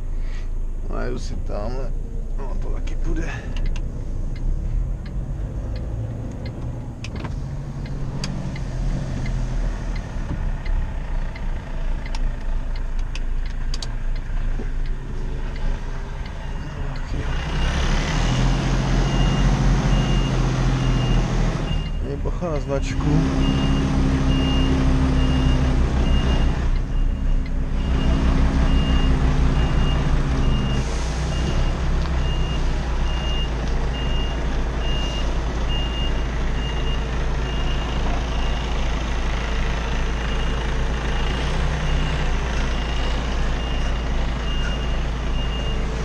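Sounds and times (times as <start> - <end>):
diesel engine running: 0.0 - 46.0
truck reversing alarm beeping: 14.2 - 46.0.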